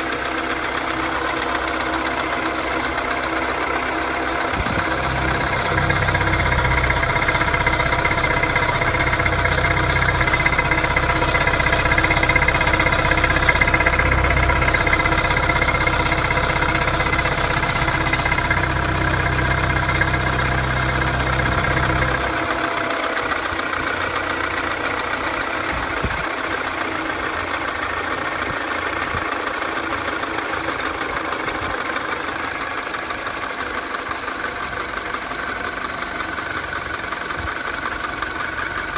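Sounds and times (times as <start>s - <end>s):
car engine idling: 0.0s - 38.9s
engine ticking: 0.0s - 38.9s
deep low rumble: 4.5s - 22.6s.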